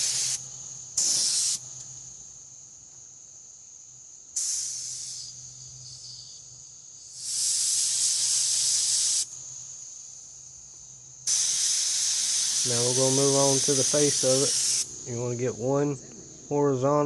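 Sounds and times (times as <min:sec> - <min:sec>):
spray gun hissing in bursts: 0:00.0 - 0:01.7, 0:04.4 - 0:05.4, 0:07.1 - 0:09.4, 0:11.2 - 0:15.6
faint steady hiss: 0:00.0 - 0:17.0.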